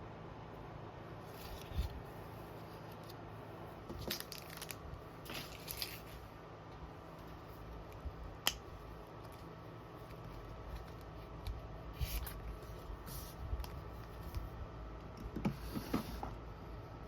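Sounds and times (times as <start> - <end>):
plastic or paper crinkling: 4.0 - 6.2.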